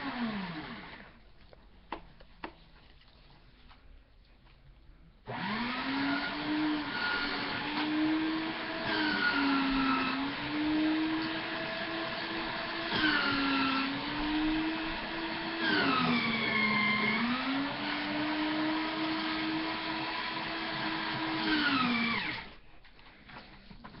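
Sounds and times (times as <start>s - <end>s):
small electric motor whirring: 5.3s - 22.6s.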